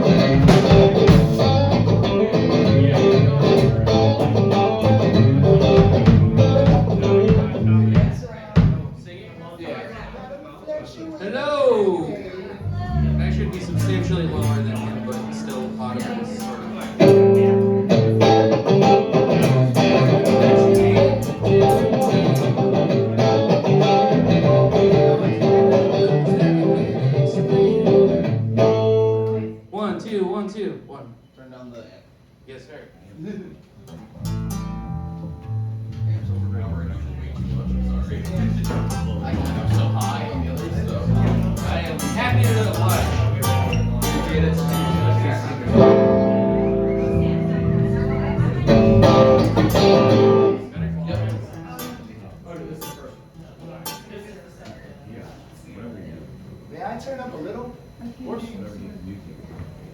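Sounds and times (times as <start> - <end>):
low bass line: 0.0 - 8.2, 12.6 - 16.3, 17.0 - 29.1, 34.2 - 51.5
guitar playing: 0.0 - 8.4, 12.6 - 29.6, 33.9 - 53.0
sharp drum hits: 0.1 - 1.6.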